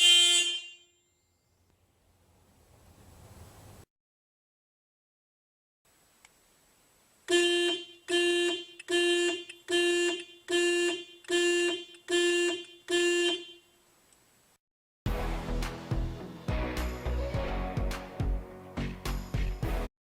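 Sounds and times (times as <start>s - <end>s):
car alarm beeping: 0.0s - 1.1s, 7.3s - 13.6s.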